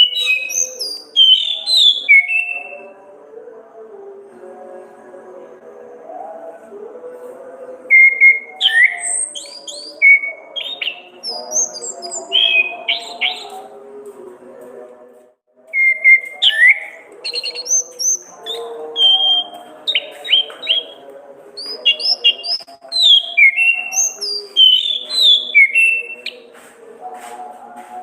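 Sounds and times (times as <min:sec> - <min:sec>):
bird singing whistled notes: 0:00.0 - 0:02.8, 0:07.9 - 0:13.6, 0:15.8 - 0:21.0, 0:21.6 - 0:26.4.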